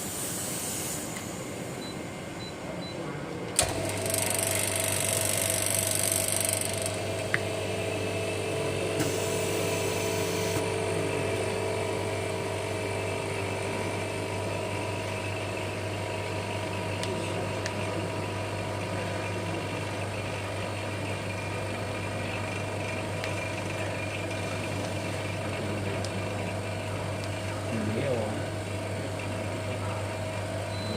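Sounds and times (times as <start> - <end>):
air hiss: 0.0 - 1.2
electric machine hum: 0.0 - 30.9.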